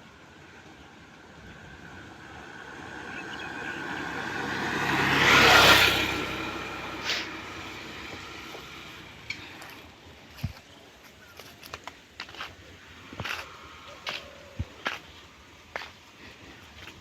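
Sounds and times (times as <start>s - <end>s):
motor vehicle passing by: 1.5s - 10.0s.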